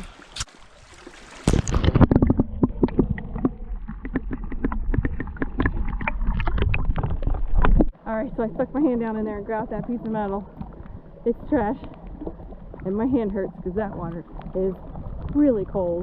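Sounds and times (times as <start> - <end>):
water splashing and sloshing: 0.0 - 16.0.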